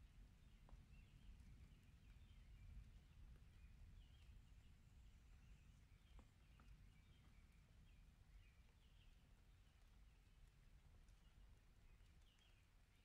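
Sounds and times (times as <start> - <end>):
light ticks: 6.0 - 7.4, 8.6 - 13.0.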